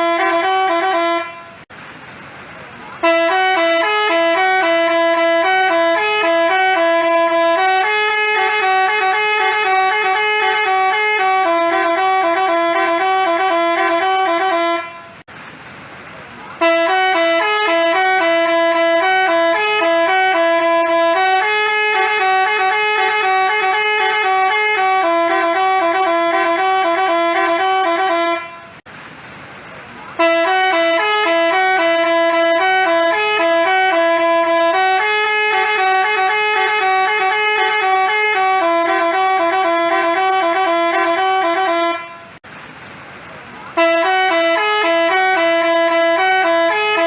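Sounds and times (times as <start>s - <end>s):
bus horn playing a tune: 0.0s - 1.7s, 2.9s - 15.3s, 16.6s - 28.9s, 30.1s - 42.4s, 43.7s - 47.0s.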